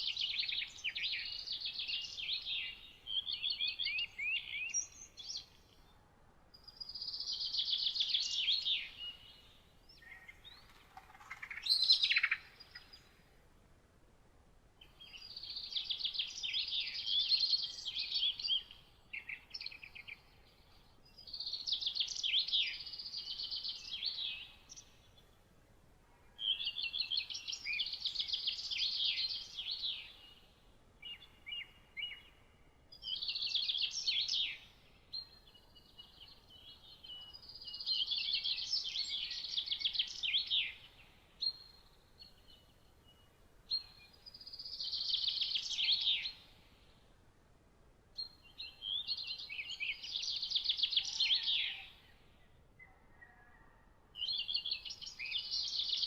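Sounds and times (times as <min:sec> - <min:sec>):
songbird trilling: 0:10.0 - 0:13.0.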